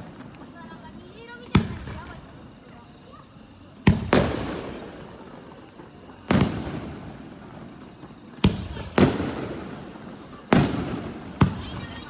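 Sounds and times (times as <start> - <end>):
rolling echo: 0.0 - 12.0
firework shells booming: 3.8 - 12.0.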